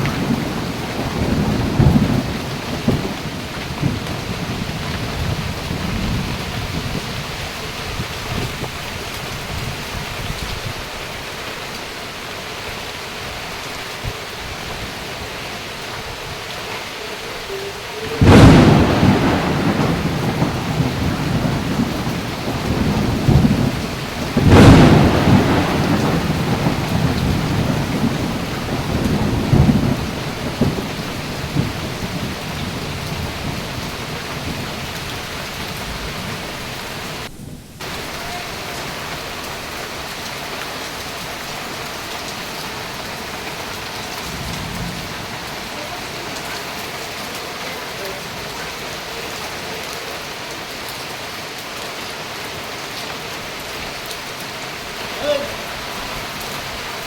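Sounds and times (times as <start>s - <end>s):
thunderclaps with rolling rumble: 0.0s - 10.7s, 18.2s - 47.2s
steady rain falling: 0.0s - 57.0s.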